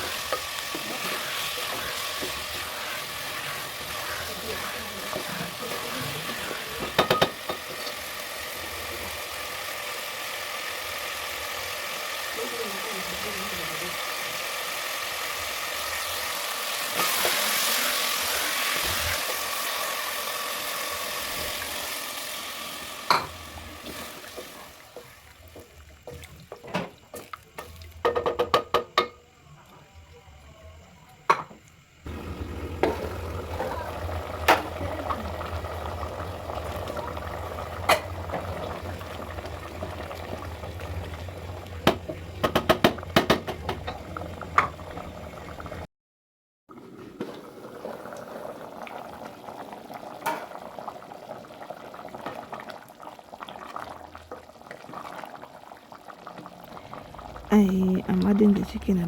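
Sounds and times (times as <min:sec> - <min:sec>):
food sizzling in a pot: 0:00.0 - 0:29.4, 0:31.3 - 0:45.9, 0:46.7 - 0:59.0
utensil clinking against pot: 0:06.8 - 0:07.6.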